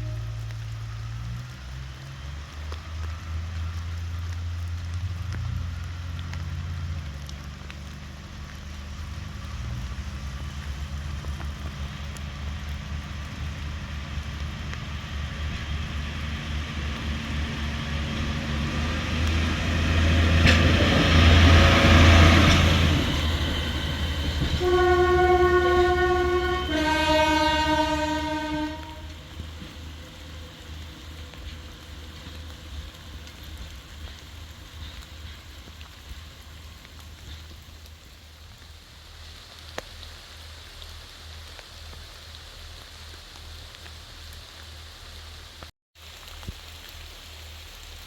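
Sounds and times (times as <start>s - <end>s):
train horn: 0.0s - 0.9s, 19.5s - 30.4s
diesel train engine rumble: 0.0s - 45.6s.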